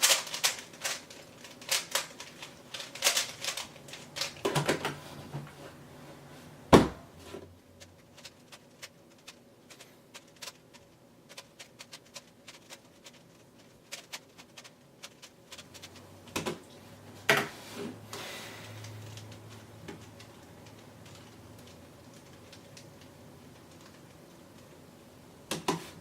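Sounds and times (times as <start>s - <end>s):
puzzle cube plastic clicking: 0.0s - 4.5s, 8.2s - 16.6s.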